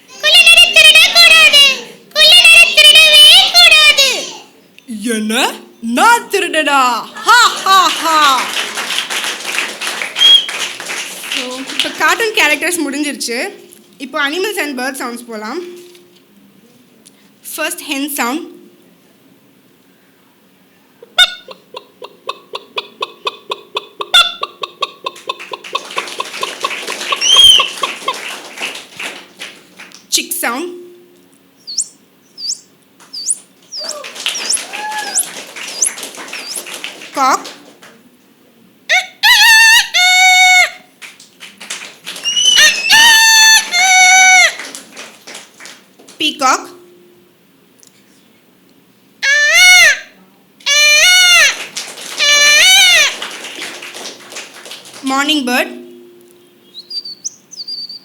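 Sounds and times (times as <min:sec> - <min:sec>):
imitated cackle: 0:00.1 - 0:04.3, 0:07.1 - 0:12.0, 0:21.0 - 0:29.8, 0:33.2 - 0:37.6, 0:38.9 - 0:40.9, 0:41.6 - 0:45.8, 0:50.7 - 0:55.0
imitated squawk: 0:00.1 - 0:04.4, 0:10.2 - 0:10.7, 0:21.0 - 0:29.2, 0:31.6 - 0:37.1, 0:38.9 - 0:40.9, 0:42.1 - 0:45.4, 0:49.2 - 0:54.0, 0:56.7 - 0:58.0.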